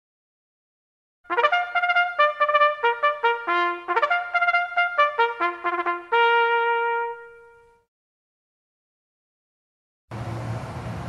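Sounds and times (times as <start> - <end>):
solo trumpet-like brass music: 1.3 - 7.9.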